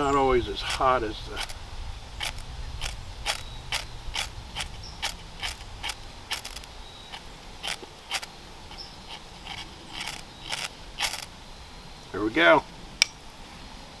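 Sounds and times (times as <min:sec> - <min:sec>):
ferro rod scraping: 0:00.0 - 0:11.3.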